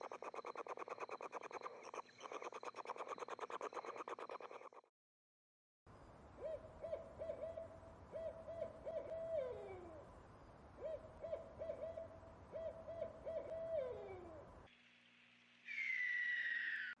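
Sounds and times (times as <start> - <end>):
owl hooting: 6.4 - 10.0, 10.8 - 14.5, 15.7 - 17.0.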